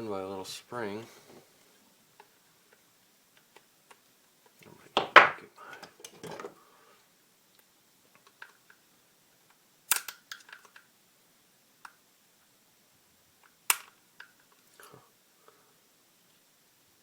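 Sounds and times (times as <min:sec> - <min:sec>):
metallic clicks of gun parts: 0:09.9 - 0:10.8, 0:13.4 - 0:14.4.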